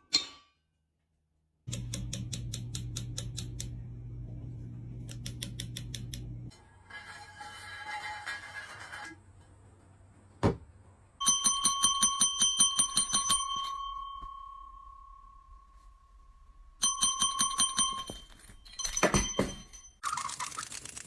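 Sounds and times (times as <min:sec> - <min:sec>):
single knock: 0:10.4 - 0:10.6
small bell trilling: 0:11.2 - 0:15.5.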